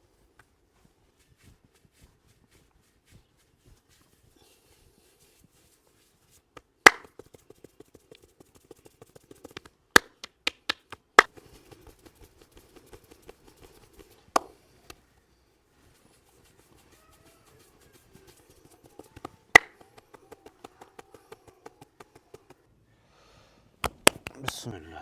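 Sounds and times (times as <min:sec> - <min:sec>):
loud sharp slaps: 0:06.9 - 0:07.2, 0:19.2 - 0:22.6, 0:23.8 - 0:24.6
light chopping taps on head: 0:18.8 - 0:22.6.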